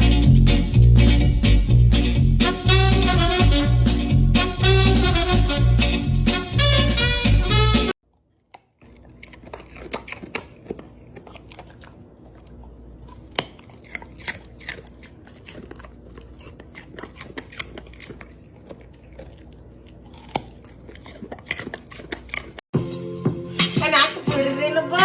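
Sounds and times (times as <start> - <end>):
chewing crunchy food: 8.0 - 22.7.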